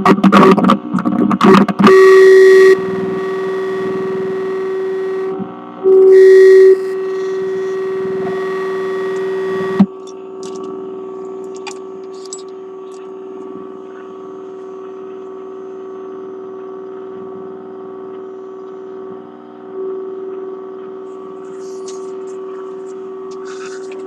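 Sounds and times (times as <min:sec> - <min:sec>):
faint static crackles: 0:00.2 - 0:13.6
radio hum-like tone: 0:01.4 - 0:16.5, 0:21.0 - 0:24.0.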